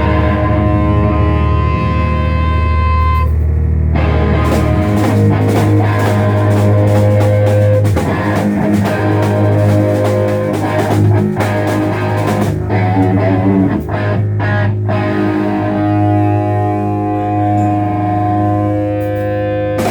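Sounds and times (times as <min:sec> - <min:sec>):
held bass note: 0:00.0 - 0:18.9
electric guitar: 0:00.0 - 0:19.9
drum kit: 0:04.0 - 0:14.6.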